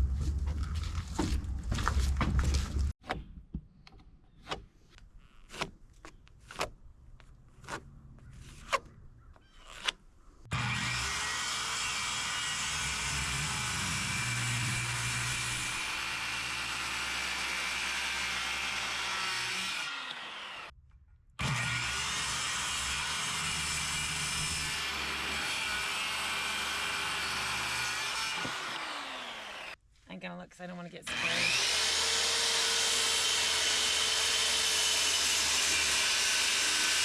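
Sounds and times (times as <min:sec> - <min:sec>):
electric saw cutting wood: 0:10.5 - 0:20.7, 0:21.4 - 0:29.8, 0:31.1 - 0:37.0.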